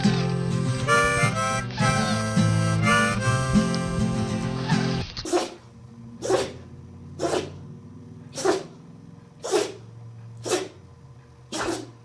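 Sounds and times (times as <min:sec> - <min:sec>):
dog sneezing: 0:05.2 - 0:05.6, 0:06.2 - 0:06.6, 0:07.2 - 0:07.6, 0:08.3 - 0:08.8, 0:09.4 - 0:10.8, 0:11.5 - 0:12.0.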